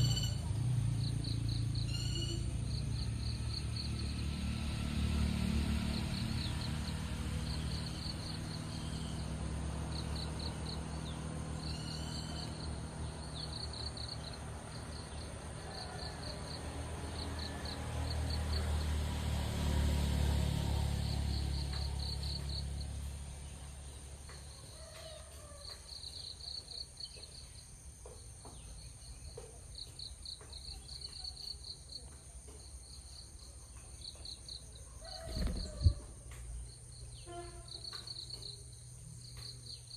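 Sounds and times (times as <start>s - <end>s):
crickets chirping: 0.0s - 39.9s
brief thump: 35.3s - 36.1s
low rumble: 35.3s - 36.2s.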